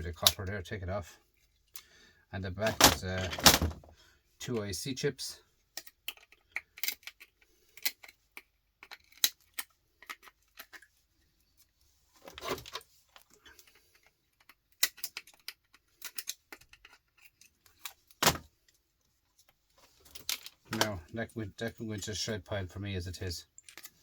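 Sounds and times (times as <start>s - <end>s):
hand tools clicking and snapping: 5.8s - 10.9s, 13.4s - 18.4s, 23.6s - 24.0s.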